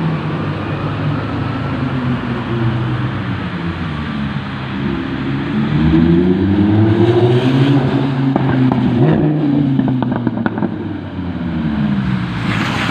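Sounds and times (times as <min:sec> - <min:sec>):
car engine revving: 0:00.0 - 0:12.9
exhaust popping and crackling: 0:08.2 - 0:11.1.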